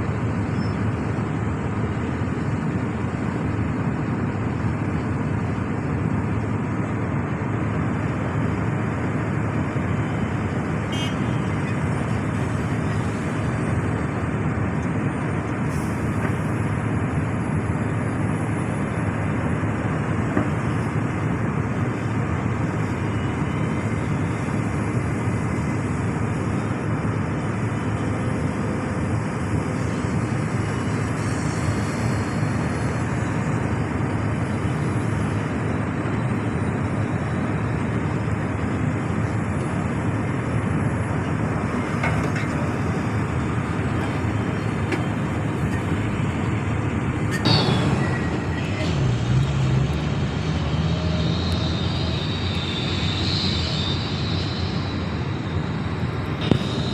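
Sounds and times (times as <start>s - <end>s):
heavy diesel excavator running: 0.0s - 56.9s
sudden loud burst of noise: 47.4s - 49.8s.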